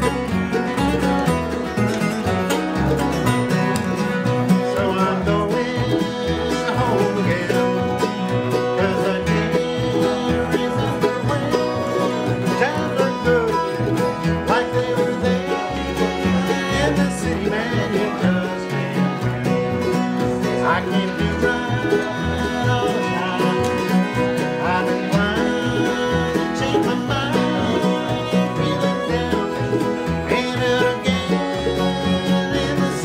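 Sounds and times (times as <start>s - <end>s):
bluegrass banjo and guitar music: 0.0s - 33.0s.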